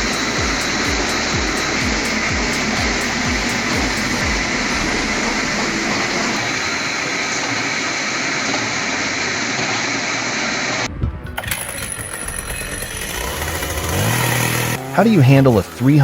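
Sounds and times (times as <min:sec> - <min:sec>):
low falling sweeps: 0:00.0 - 0:08.4
wood-processing machinery grinding: 0:00.0 - 0:10.8, 0:11.4 - 0:16.0.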